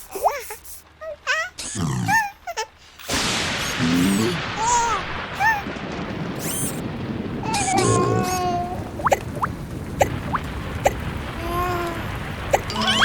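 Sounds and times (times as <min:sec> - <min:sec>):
high squeaky baby-like vocals: 0:00.0 - 0:02.7, 0:07.4 - 0:08.8, 0:11.4 - 0:13.0
cartoon heavy rain pouring: 0:00.0 - 0:13.0.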